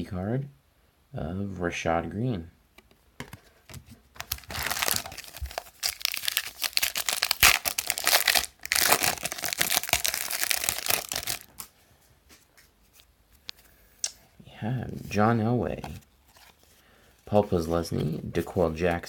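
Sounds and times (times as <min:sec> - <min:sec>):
card pack wrapper crinkling: 0:03.2 - 0:11.7.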